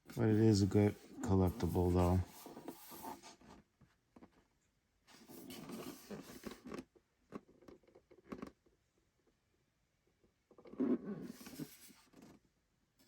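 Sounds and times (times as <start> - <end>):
scratching and rubbing container: 0.0 - 3.5, 5.2 - 6.8.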